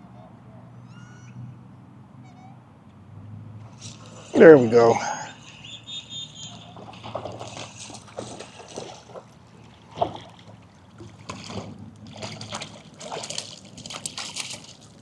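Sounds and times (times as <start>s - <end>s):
fish splashing in water: 3.6s - 15.0s.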